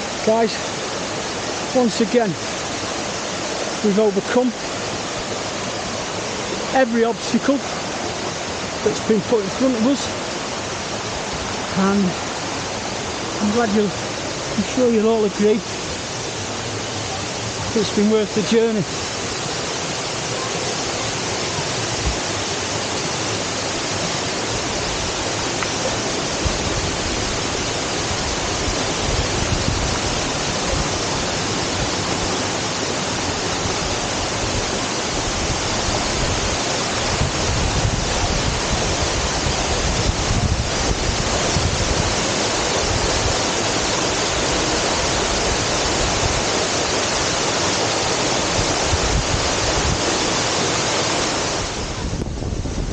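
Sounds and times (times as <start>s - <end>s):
waterfall roaring: 0.0s - 52.9s
wind buffeting microphone: 26.0s - 32.4s, 33.5s - 43.6s, 48.5s - 50.2s, 51.5s - 52.9s.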